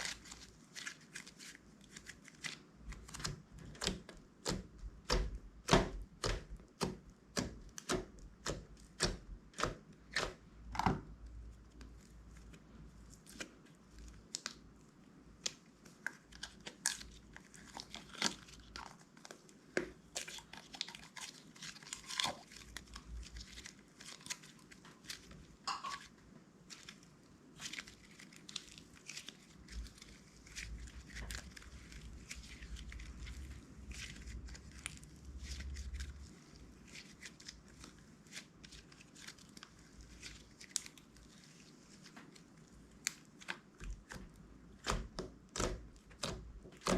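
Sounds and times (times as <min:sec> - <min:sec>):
slime popping and crackling: 0:15.4 - 0:26.1, 0:42.9 - 0:46.9.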